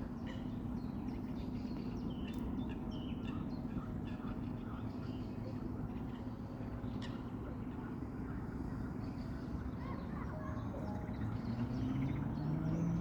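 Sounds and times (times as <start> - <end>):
songbirds chirping and singing: 8.9 - 13.0.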